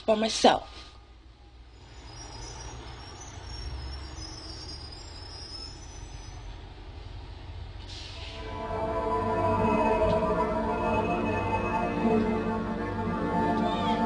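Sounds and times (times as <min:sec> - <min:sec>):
short hiss: 0:07.9 - 0:08.3.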